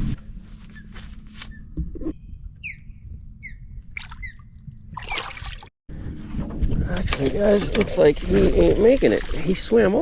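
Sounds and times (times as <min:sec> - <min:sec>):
low rumble: 0:05.9 - 0:09.6.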